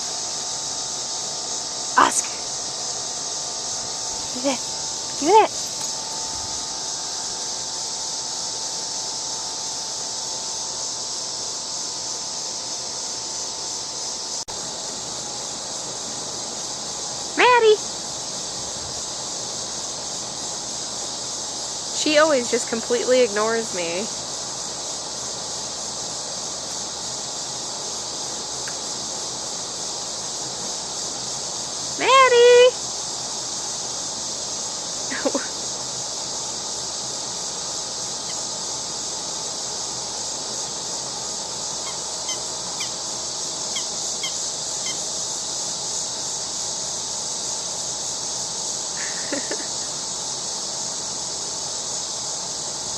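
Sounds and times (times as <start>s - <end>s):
insect chorus buzzing: 0.0s - 52.9s.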